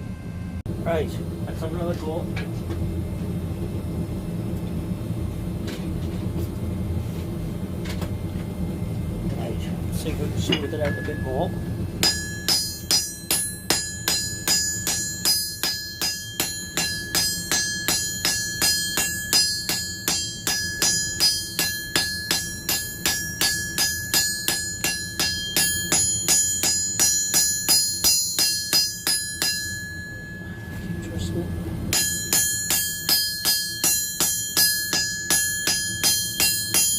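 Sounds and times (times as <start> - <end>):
hammer striking steel on anvil: 10.4 - 36.9.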